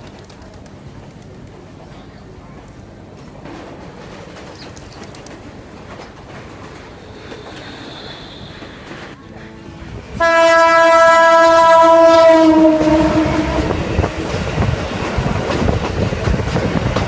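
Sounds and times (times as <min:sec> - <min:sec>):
train wheels clattering on rails: 0:00.0 - 0:10.1, 0:13.0 - 0:17.0
train horn blast: 0:06.6 - 0:14.3.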